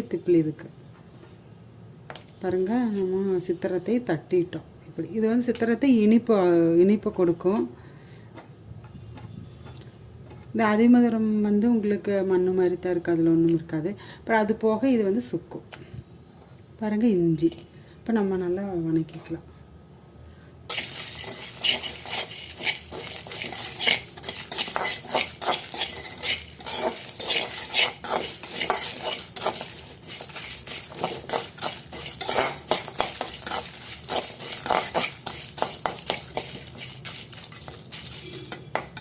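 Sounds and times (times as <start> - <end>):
spatula scraping spices in pan: 20.7 - 39.0.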